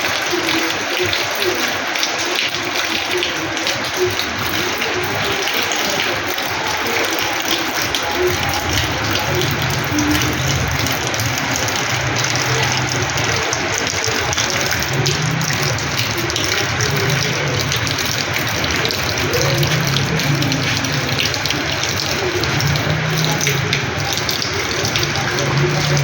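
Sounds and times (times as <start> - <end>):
rainwater splashing on floor: 0.0 - 26.0.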